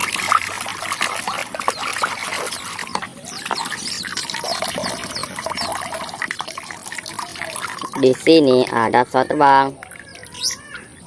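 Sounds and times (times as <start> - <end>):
water splashing and trickling: 0.0 - 11.0.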